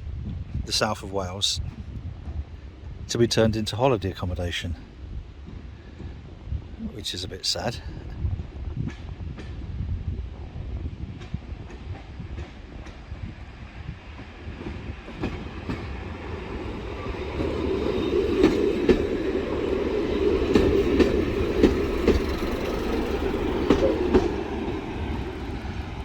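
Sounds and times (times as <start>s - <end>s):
diesel train engine drone: 4.9s - 26.0s
train wheels clicking over rail joints: 14.0s - 26.0s.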